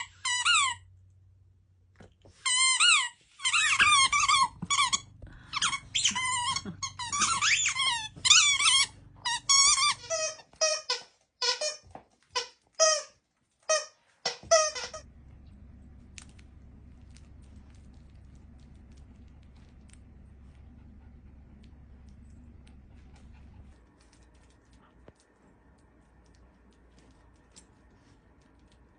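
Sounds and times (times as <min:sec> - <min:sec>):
squeaky dog toy squeaking: 0:00.0 - 0:00.8, 0:02.4 - 0:15.1.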